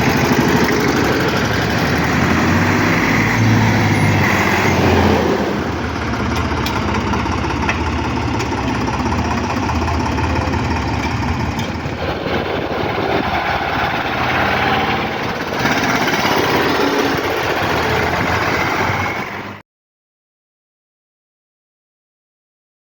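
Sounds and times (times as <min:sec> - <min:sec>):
farm vehicle engine running: 0:00.0 - 0:19.6.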